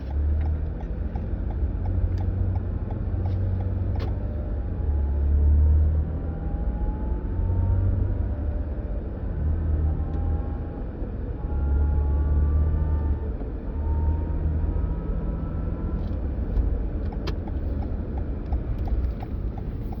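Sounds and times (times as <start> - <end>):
car driving low rumble: 0.0 - 20.0
faint regular ticking: 17.0 - 20.0.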